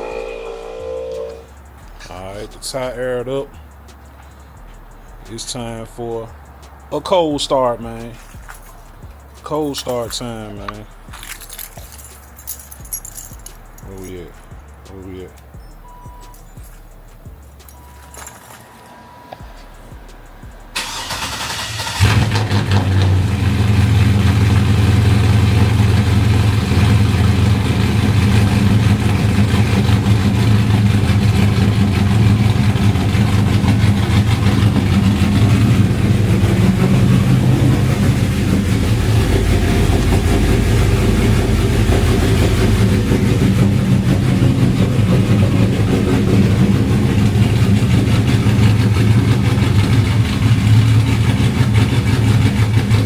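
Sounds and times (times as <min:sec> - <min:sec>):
car engine idling: 0:00.0 - 0:18.6, 0:19.4 - 0:53.0
starter motor cranking: 0:20.7 - 0:23.1.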